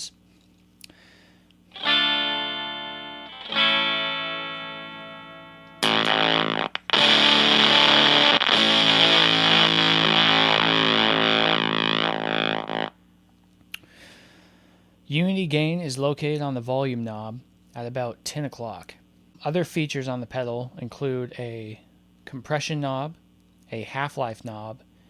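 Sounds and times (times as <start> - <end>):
fuzz electric guitar: 1.7 - 13.0.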